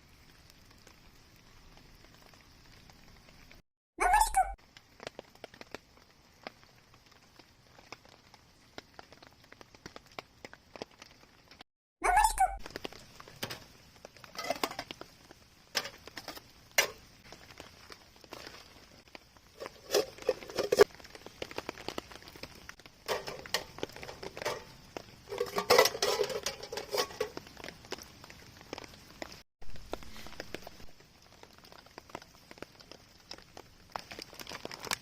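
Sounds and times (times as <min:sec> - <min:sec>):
rain pattering on a tarp: 0:00.0 - 0:03.6, 0:04.6 - 0:11.7, 0:12.6 - 0:35.0
clattering and rustling: 0:13.3 - 0:15.0, 0:15.7 - 0:17.0, 0:19.6 - 0:20.9, 0:23.0 - 0:27.5.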